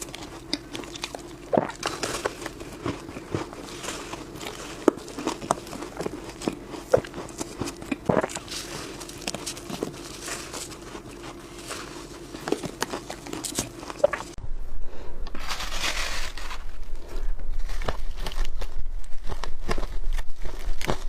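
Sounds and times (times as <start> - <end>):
biting crunchy ice: 0.0 - 14.4
faint steady hum: 0.0 - 21.0.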